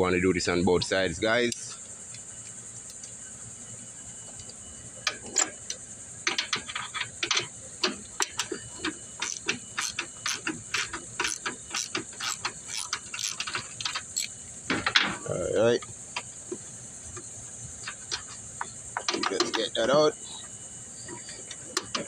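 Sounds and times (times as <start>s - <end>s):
crickets chirping: 0.0s - 22.0s
ratchet wrench clicking: 9.2s - 14.4s.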